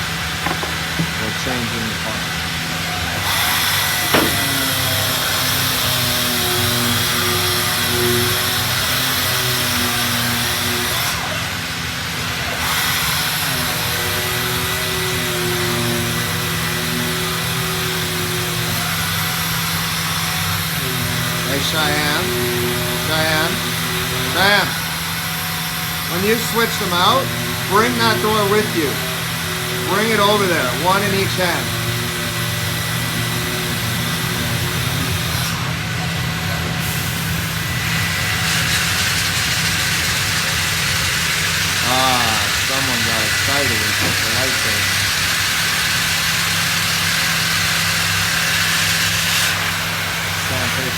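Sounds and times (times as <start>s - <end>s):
air hissing: 3.1s - 7.2s, 36.8s - 50.9s
machine hum: 20.0s - 47.5s.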